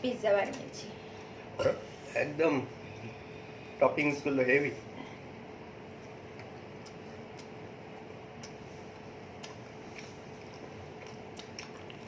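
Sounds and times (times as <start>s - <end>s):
faint hum: 0.0s - 12.0s
people chewing food: 5.9s - 12.0s.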